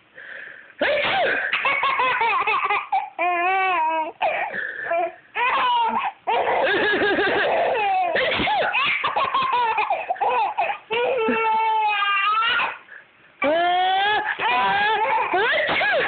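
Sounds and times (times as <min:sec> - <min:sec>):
baby laughing: 0:01.5 - 0:12.8, 0:13.9 - 0:16.0
baby squealing: 0:01.9 - 0:12.8, 0:13.9 - 0:15.7.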